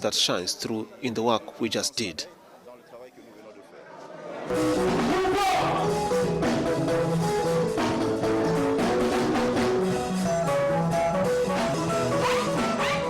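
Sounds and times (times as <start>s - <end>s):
band with held melodic notes: 4.5s - 13.0s
drum beat: 4.5s - 13.0s.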